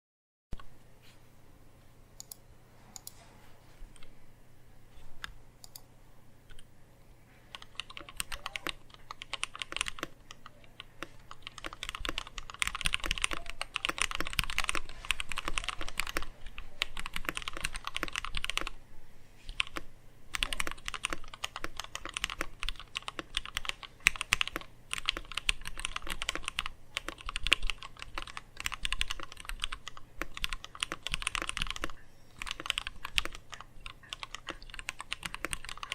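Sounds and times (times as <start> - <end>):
mechanical keyboard typing: 7.5 - 18.8, 19.5 - 35.9.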